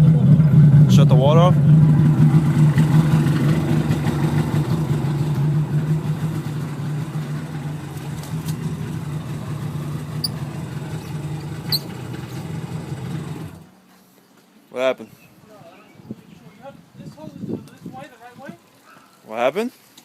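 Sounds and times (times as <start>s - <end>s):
two-stroke engine running: 0.0s - 13.7s.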